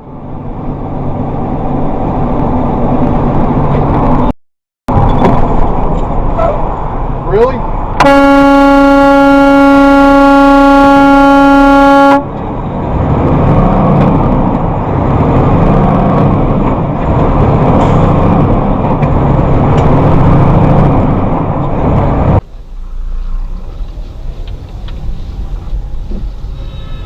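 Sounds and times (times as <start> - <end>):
vehicle road and engine rumble: 0.0 - 27.0
car horn blast: 8.0 - 12.3.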